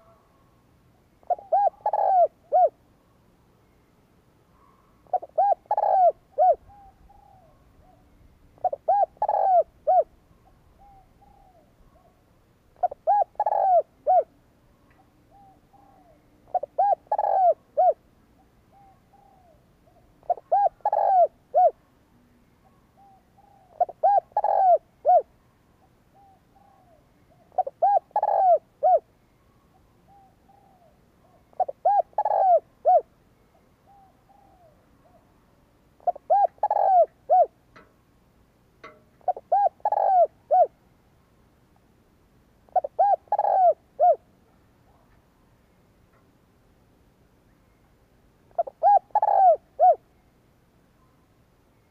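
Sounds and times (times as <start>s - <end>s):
dove cooing: 1.2s - 2.8s, 4.6s - 21.9s, 22.6s - 35.4s, 36.0s - 37.6s, 38.8s - 40.8s, 42.7s - 44.3s, 48.5s - 50.1s.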